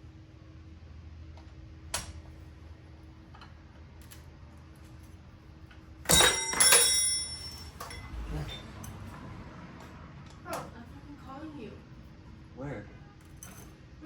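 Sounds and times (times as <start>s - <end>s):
metal parts clinking: 6.1s - 9.0s.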